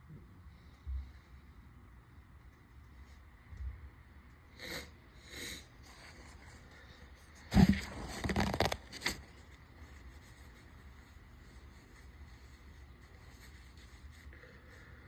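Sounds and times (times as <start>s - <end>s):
noisy breath and rustling: 4.4s - 15.0s.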